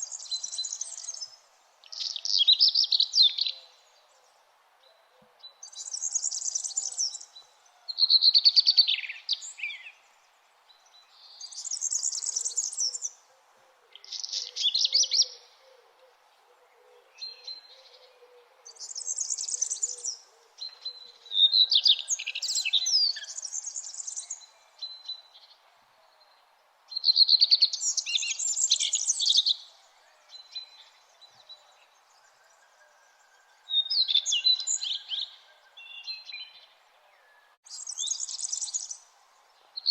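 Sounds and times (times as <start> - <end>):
songbirds twittering: 0.0 - 39.9.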